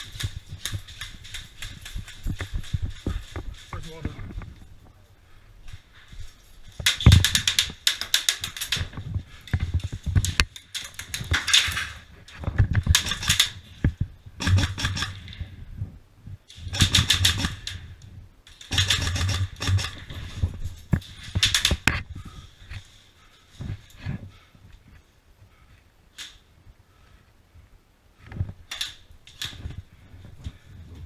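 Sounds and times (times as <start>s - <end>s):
airsoft gun firing bursts: 12.9s - 13.6s, 14.4s - 15.3s, 16.7s - 17.7s, 18.7s - 20.1s.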